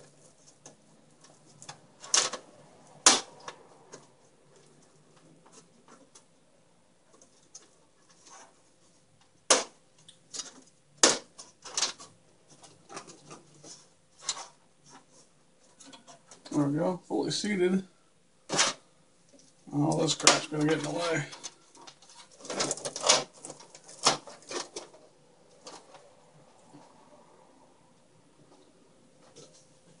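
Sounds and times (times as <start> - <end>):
computer parts clicking and rattling: 0.0 - 6.2, 9.5 - 14.6, 18.5 - 25.0.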